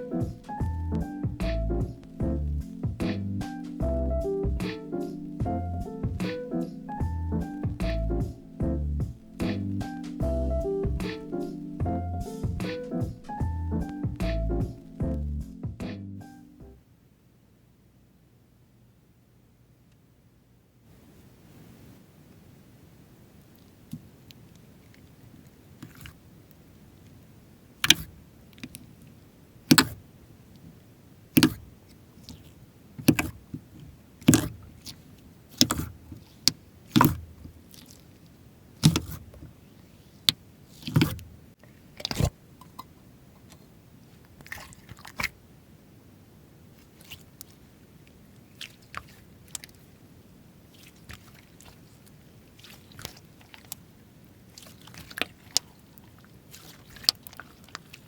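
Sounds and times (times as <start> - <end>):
slime squeezed with wet pops: 4.6 - 10.2, 27.8 - 28.2, 29.7 - 30.0, 31.4 - 33.5, 34.2 - 38.0.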